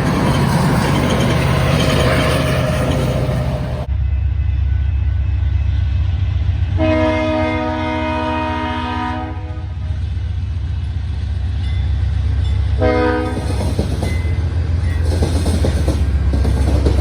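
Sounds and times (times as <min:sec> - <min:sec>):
passing train rumble: 0:00.0 - 0:17.0
locomotive air horn: 0:06.8 - 0:09.9, 0:12.8 - 0:13.6.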